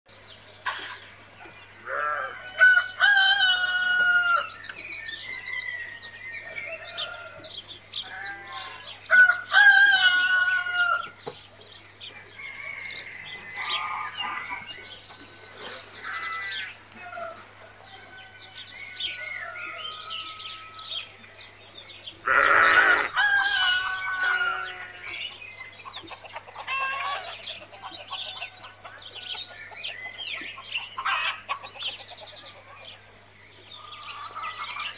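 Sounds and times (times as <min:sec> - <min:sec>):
rooster crowing: 0:08.2 - 0:11.1, 0:22.3 - 0:25.0
small birds chirping: 0:10.4 - 0:34.9.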